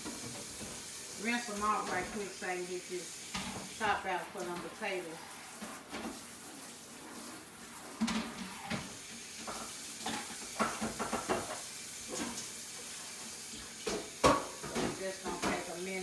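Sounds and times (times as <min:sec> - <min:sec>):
dishes knocking and clattering: 0:00.0 - 0:00.8, 0:07.9 - 0:12.5, 0:13.8 - 0:15.8.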